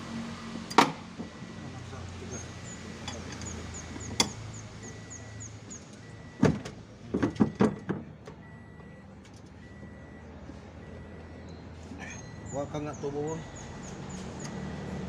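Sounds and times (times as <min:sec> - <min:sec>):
tools knocking and clanking: 0:03.0 - 0:04.4, 0:06.4 - 0:08.4.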